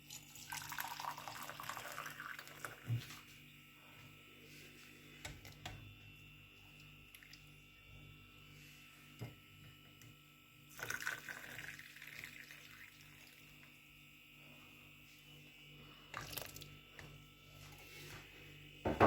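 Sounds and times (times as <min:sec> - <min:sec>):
hot liquid pouring: 0:00.1 - 0:02.9, 0:10.7 - 0:13.5.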